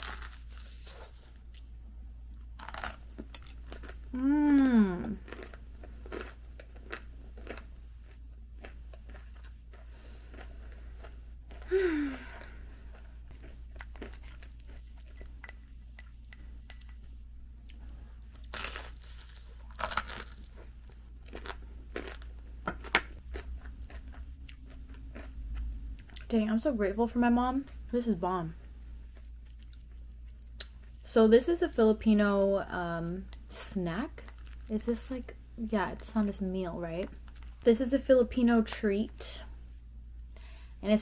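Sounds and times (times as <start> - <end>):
chewing crispy fritters: 0.0 - 16.9, 17.6 - 26.3
person humming mm: 4.2 - 5.2.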